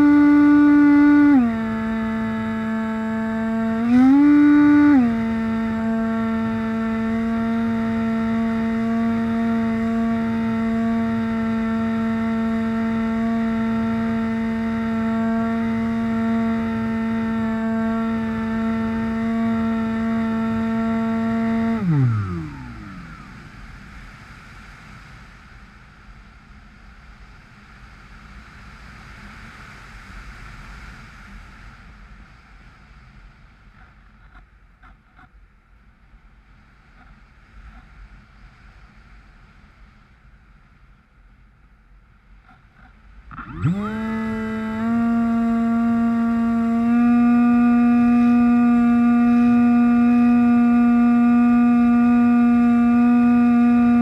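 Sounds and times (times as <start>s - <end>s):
model plane motor whining: 0.0s - 24.3s, 42.5s - 54.0s.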